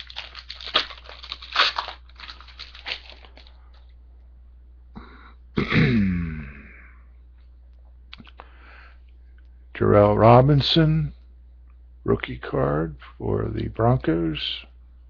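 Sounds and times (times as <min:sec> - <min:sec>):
foil wrapper crinkling and tearing: 0:00.0 - 0:03.8
short falling vocal sound: 0:05.6 - 0:07.0.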